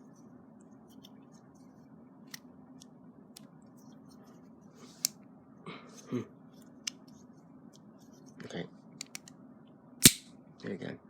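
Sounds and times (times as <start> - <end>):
low steady hum: 0.0 - 11.0
knife mechanism clicks: 10.0 - 10.2.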